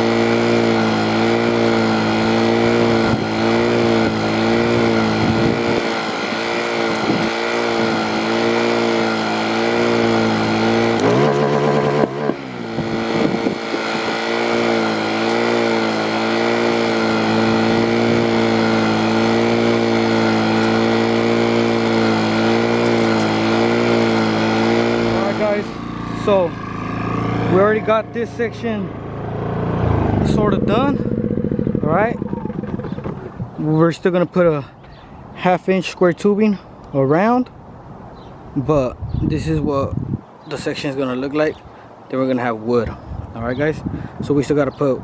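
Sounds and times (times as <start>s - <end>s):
engine running steadily: 0.0s - 34.0s.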